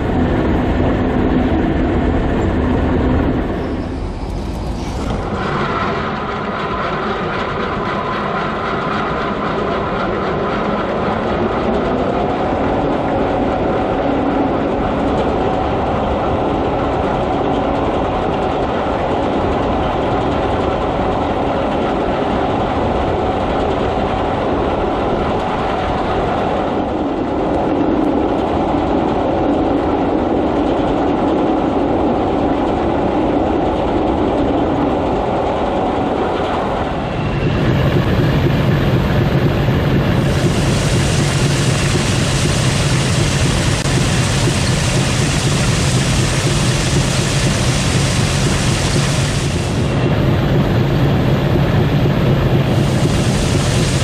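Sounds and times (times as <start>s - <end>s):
combine harvester rumbling: 36.3s - 54.0s.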